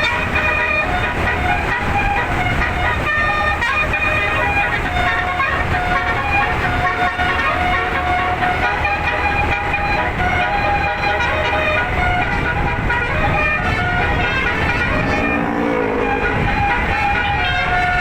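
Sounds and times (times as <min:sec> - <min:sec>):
musical air horn melody: 0:00.0 - 0:18.0
low rumble: 0:14.5 - 0:17.3.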